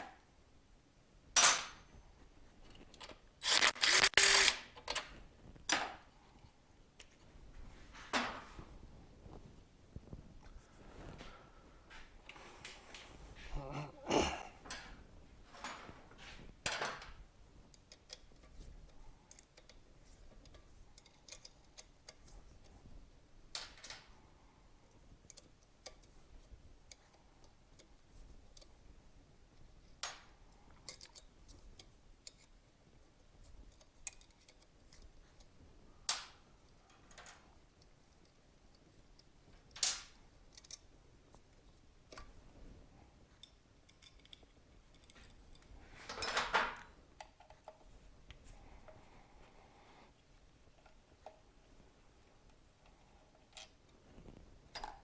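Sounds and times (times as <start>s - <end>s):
metallic clicks of hand tools: 3.0s - 5.0s.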